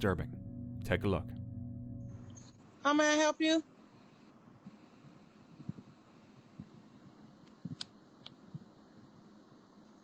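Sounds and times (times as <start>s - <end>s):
faint steady hiss: 2.0s - 10.0s.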